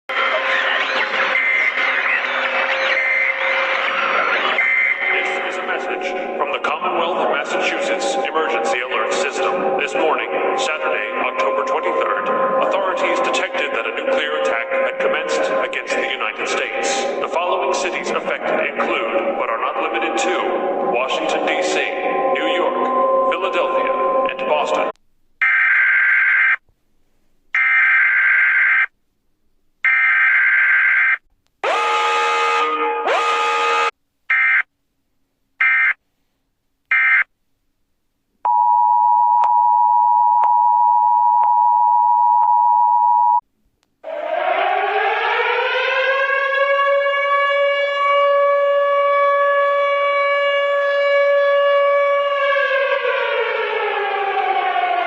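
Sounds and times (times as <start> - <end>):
electronic alarm siren: 0.1 - 6.4, 7.0 - 15.6, 19.6 - 26.6, 27.6 - 28.9, 29.8 - 34.7, 35.6 - 36.0, 36.9 - 37.3, 44.0 - 55.0.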